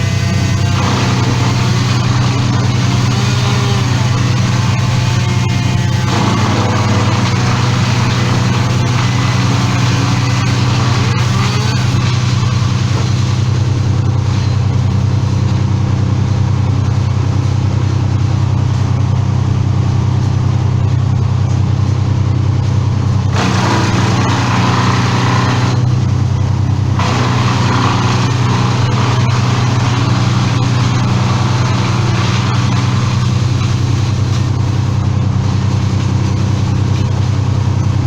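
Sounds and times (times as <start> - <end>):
rough bright noise: 0.0 - 13.9, 23.4 - 35.1
engine running loudly: 0.0 - 38.0.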